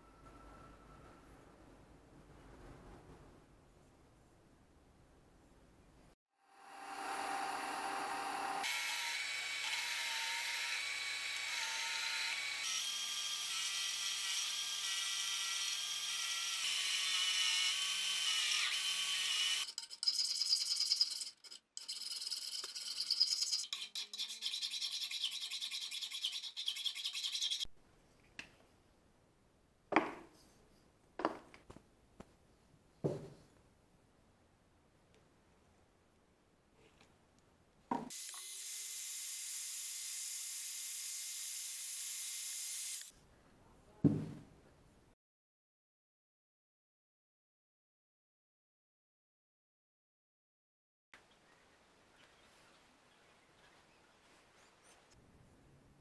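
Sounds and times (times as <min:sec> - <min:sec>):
sharp knocks: 0:44.1 - 0:44.5.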